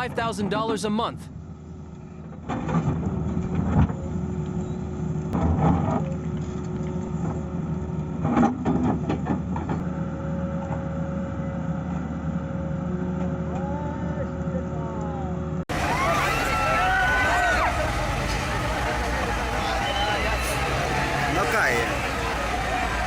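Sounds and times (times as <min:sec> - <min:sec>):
excavator diesel engine running: 0:15.7 - 0:23.0.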